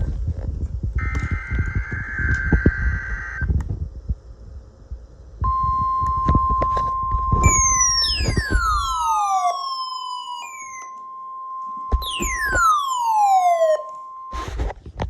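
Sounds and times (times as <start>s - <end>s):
steady alert tone: 7.4s - 10.9s, 11.9s - 14.4s
falling siren-like sweeps: 7.4s - 11.0s, 11.6s - 14.5s.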